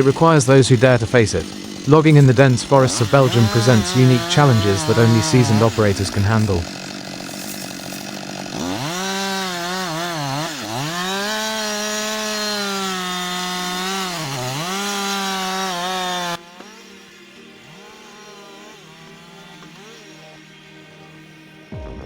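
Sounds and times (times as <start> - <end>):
chainsaw cutting through wood: 0.0 - 22.0.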